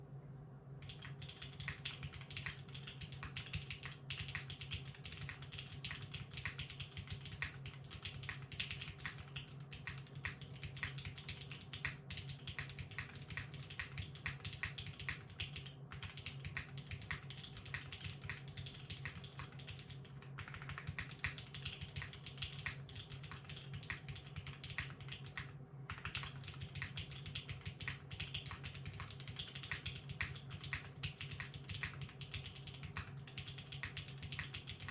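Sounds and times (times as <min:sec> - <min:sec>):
low steady hum: 0:00.0 - 0:34.9
fast typing on mechanical keyboard: 0:00.8 - 0:34.9.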